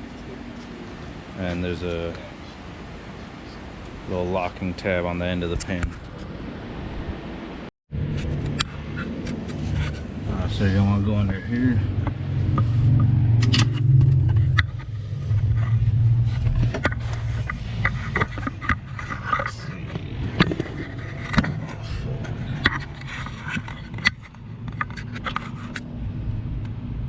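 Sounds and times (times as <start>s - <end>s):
steady low hum: 0.0s - 27.0s
hands and tool scraping: 8.1s - 25.9s.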